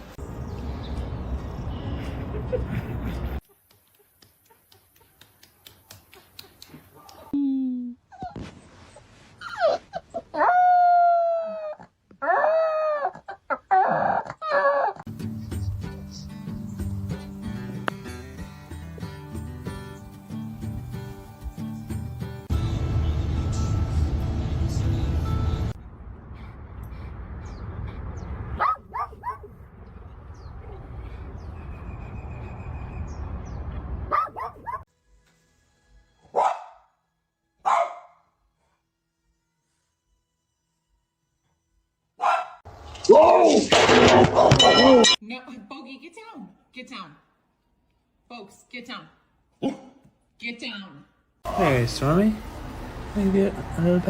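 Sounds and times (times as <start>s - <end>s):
dog yipping: 9.4s - 15.0s, 28.6s - 29.6s, 34.1s - 34.9s, 36.3s - 36.9s, 37.6s - 38.2s, 42.2s - 42.6s
dog barking: 28.6s - 29.6s, 34.1s - 34.8s, 36.3s - 36.9s, 37.6s - 38.2s, 42.2s - 42.6s, 49.6s - 50.0s.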